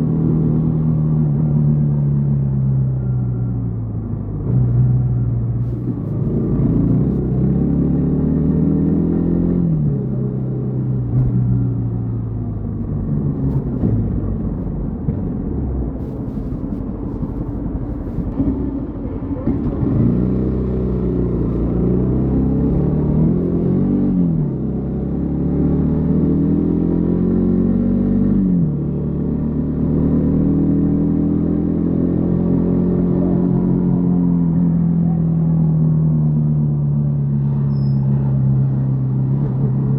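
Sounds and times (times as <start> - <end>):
motorcycle engine running: 9.3 - 25.4.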